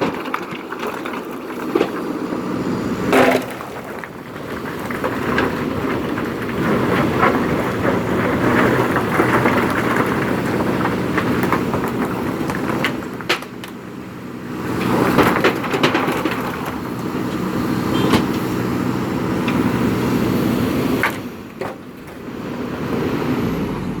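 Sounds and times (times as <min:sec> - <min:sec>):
stones knocking and clattering: 0:00.0 - 0:02.4, 0:03.1 - 0:13.8, 0:14.8 - 0:17.4
backhoe diesel engine working: 0:00.0 - 0:24.0.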